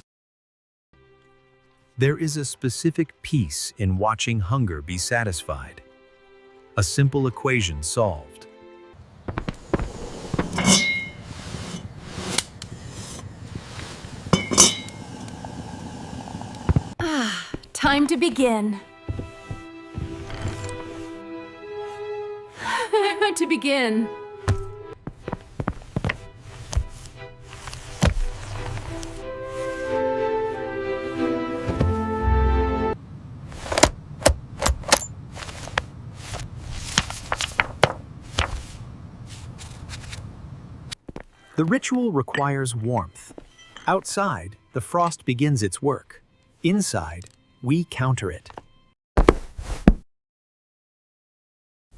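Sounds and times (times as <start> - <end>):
dishware clinking: 10.5 - 11.2, 14.4 - 15.0.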